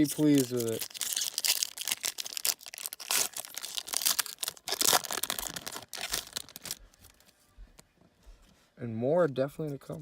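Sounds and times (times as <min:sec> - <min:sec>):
plastic wrapper crinkling and tearing: 0:00.0 - 0:07.3.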